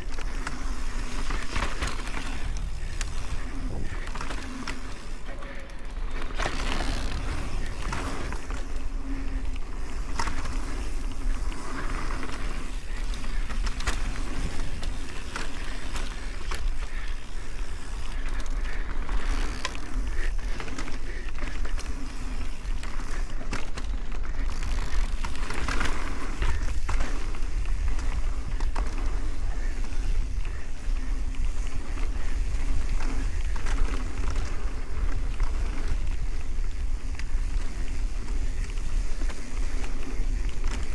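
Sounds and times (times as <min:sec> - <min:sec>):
wind rumble on microphone: 0:00.0 - 0:05.4
bike chain and frame rattling: 0:00.0 - 0:40.9
bike tyres rolling over dirt: 0:00.0 - 0:40.9.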